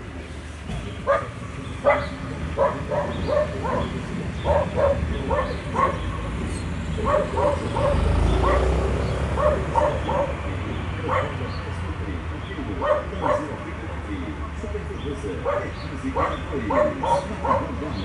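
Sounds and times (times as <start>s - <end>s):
dog barking and yipping: 1.1s - 11.5s, 12.8s - 13.6s, 15.4s - 17.9s.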